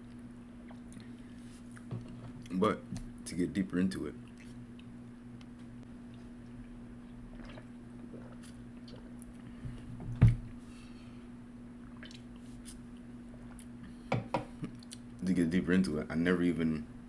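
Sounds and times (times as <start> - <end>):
steady low hum: 0.0 - 17.0
wet chewing mouth sounds: 6.0 - 9.4, 11.8 - 13.8.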